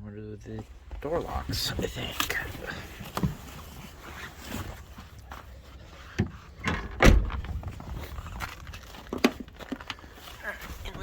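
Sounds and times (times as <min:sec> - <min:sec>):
minivan door knocks and clunks: 0:06.2 - 0:07.8
heavy door thump: 0:06.7 - 0:07.6.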